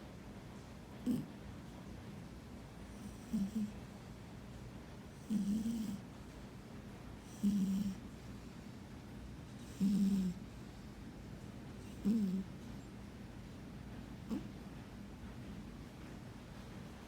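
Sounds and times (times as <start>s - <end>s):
cat snoring: 1.0s - 1.3s, 2.9s - 3.8s, 5.2s - 6.0s, 7.2s - 8.0s, 9.6s - 10.8s, 11.8s - 12.5s, 14.3s - 14.5s.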